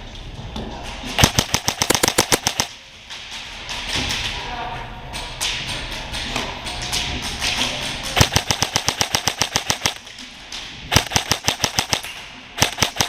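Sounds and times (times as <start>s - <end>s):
airsoft rifle firing bursts: 1.5s - 2.6s.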